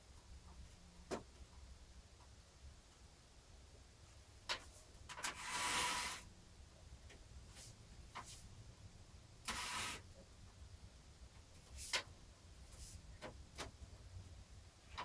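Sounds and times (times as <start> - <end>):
metal scrape: 9.5 - 10.0.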